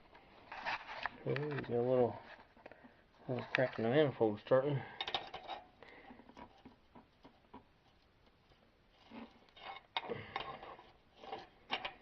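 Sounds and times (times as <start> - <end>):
wrench clicking and scraping metal: 9.0 - 12.0.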